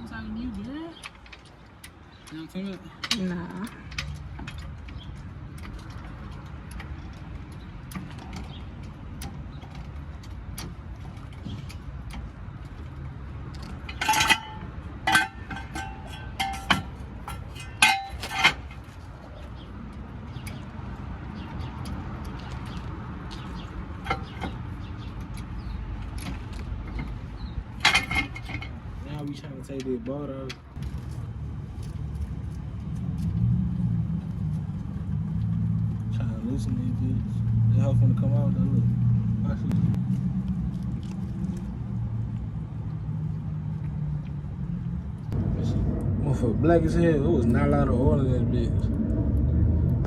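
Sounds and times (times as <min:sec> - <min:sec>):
metal hand tools clinking: 0:13.8 - 0:18.9, 0:27.8 - 0:28.8
steady low rumble: 0:30.7 - 0:50.0.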